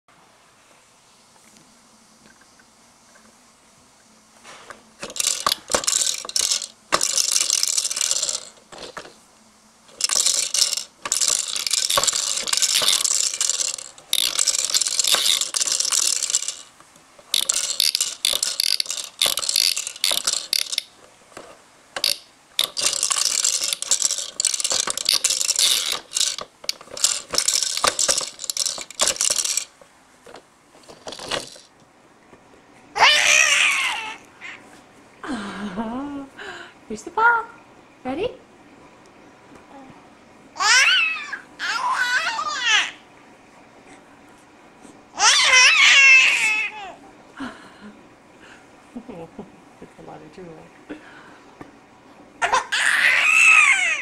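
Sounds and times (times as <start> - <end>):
toy rattling and clicking: 5.0 - 9.1, 9.9 - 31.7.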